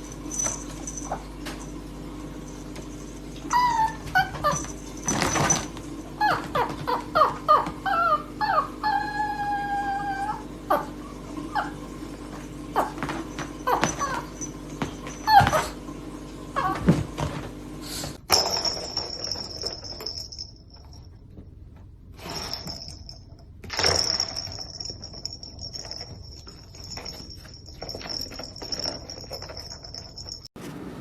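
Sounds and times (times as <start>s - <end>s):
low hum: 0.0s - 7.0s
rustling and handling noise: 0.0s - 7.8s
pet animal whining calls: 3.4s - 11.8s, 12.8s - 15.8s.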